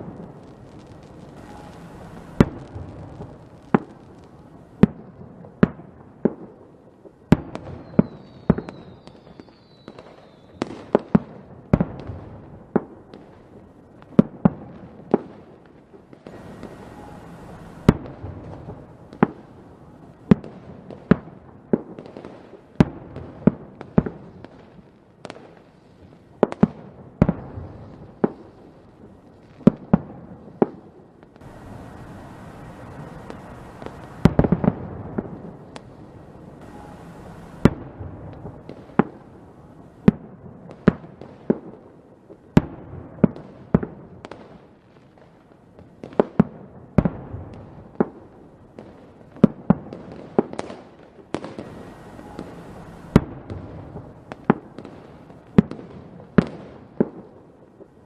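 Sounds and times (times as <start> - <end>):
falling firework whistles: 0.0 - 4.0, 7.6 - 11.0, 16.2 - 19.5, 31.4 - 39.2, 51.3 - 55.4
fireworks bangs: 0.0 - 6.6, 7.3 - 58.0.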